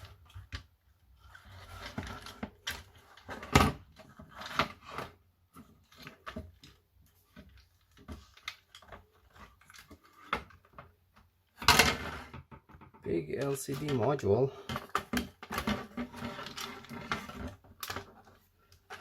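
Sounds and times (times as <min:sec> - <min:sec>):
plastic clicks and knocks: 0:06.2 - 0:13.1.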